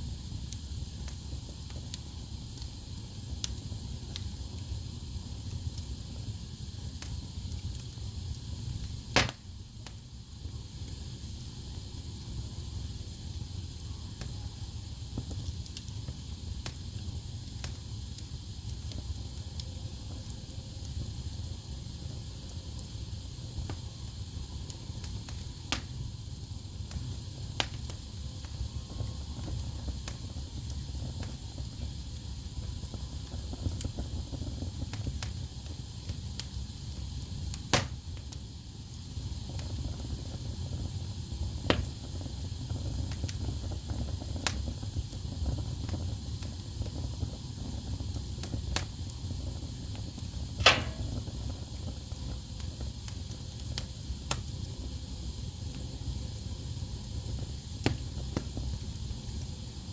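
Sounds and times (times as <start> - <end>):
fire rumbling in fireplace: 0.0 - 59.9
logs popping and snapping: 9.2 - 9.4, 37.7 - 38.0.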